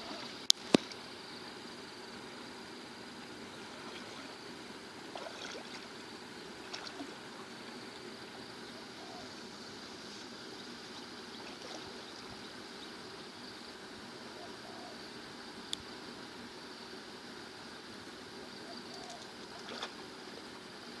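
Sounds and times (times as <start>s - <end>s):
steady hiss: 0.0s - 21.0s
water splashing and trickling: 3.6s - 7.8s, 11.3s - 12.4s, 19.5s - 20.5s.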